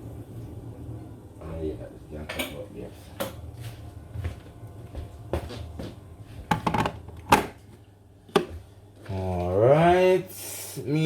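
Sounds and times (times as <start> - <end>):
cookware and cupboard knocks: 6.5 - 7.5, 8.4 - 8.6.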